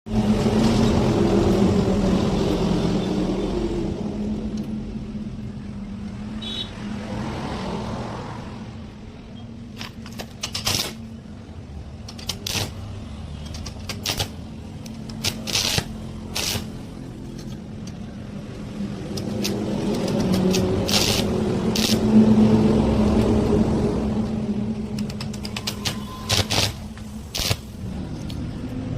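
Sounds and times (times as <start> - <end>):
welding arc crackling: 9.8 - 11.0, 12.1 - 12.9, 13.6 - 17.2, 19.2 - 22.4, 24.8 - 28.0.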